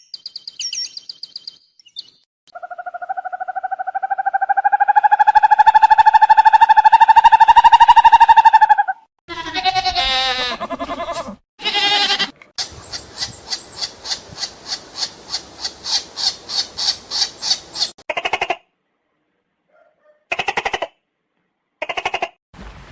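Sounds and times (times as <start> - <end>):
wavering animal call: 2.5 - 12.3.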